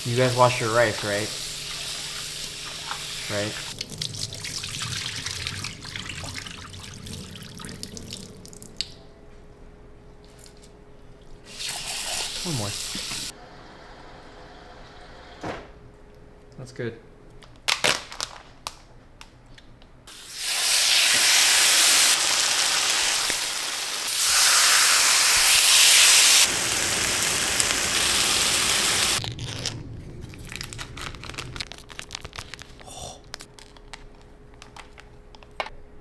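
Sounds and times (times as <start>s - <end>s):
tap water running into sink: 0.9s - 8.9s.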